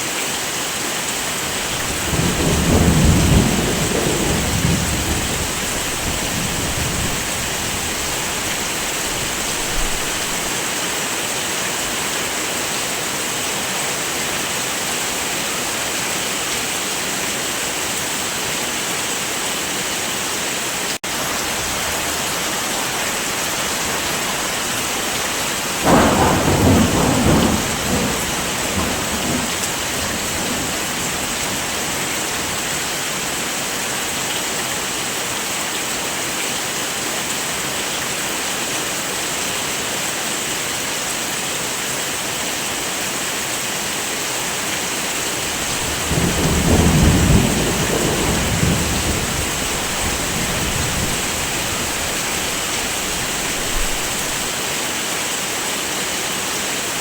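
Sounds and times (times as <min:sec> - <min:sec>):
heavy rain: 0:00.0 - 0:57.0
thunder rolling: 0:01.4 - 0:10.5, 0:25.7 - 0:32.0, 0:45.4 - 0:54.5.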